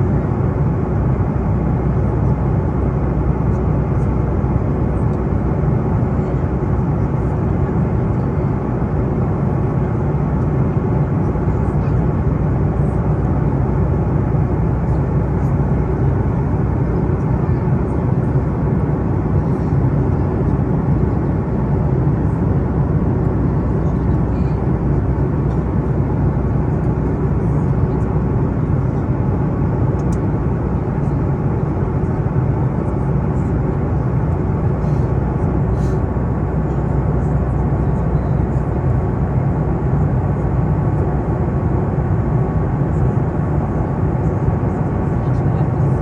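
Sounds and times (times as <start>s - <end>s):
airplane engine drone: 0.0s - 46.0s.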